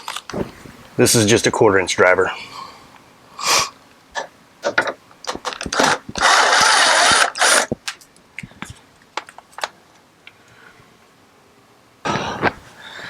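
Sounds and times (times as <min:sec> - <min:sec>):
power driver running with ratcheting: 0:05.4 - 0:07.8.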